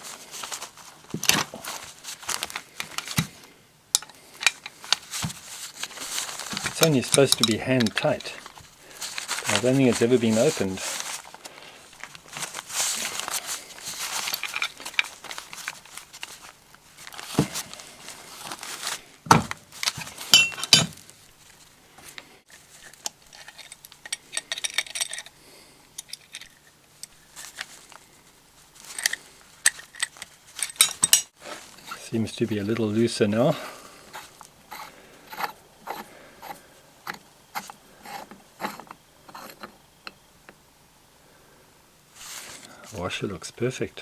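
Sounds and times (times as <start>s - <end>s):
metal tools clinking and scraping: 3.9s - 11.3s, 12.0s - 16.4s, 19.8s - 21.0s, 22.8s - 25.4s, 28.8s - 33.6s.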